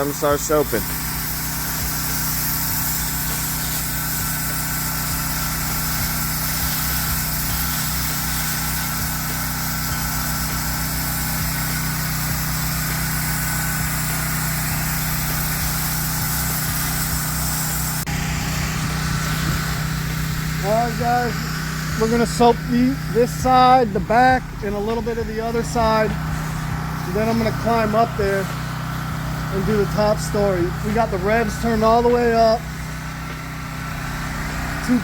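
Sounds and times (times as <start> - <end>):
pressure washer engine running: 0.0 - 35.0
water spraying hiss: 0.0 - 35.0.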